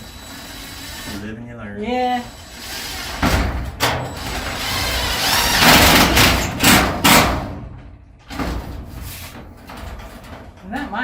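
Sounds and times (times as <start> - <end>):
metal thumps and rattling: 3.2 - 11.0
sharp knocks on metal door: 5.6 - 9.0.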